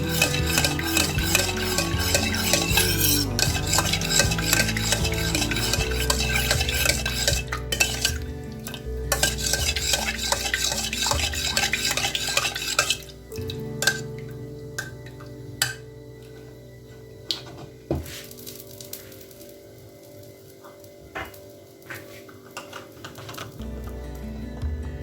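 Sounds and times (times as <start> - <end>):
spoon stirring in a pot: 0.0 - 14.2.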